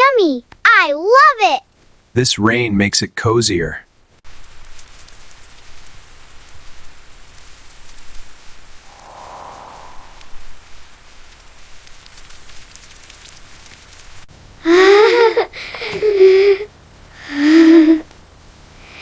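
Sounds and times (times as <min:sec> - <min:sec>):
high-pitched wordless voice: 0:00.0 - 0:01.6
light rain patter: 0:03.0 - 0:08.9, 0:10.2 - 0:19.0.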